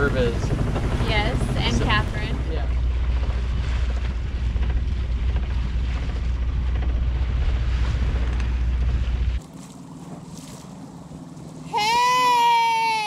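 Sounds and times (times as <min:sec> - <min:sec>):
wind buffeting microphone: 0:00.0 - 0:11.6
sea water rushing along hull: 0:00.0 - 0:13.0.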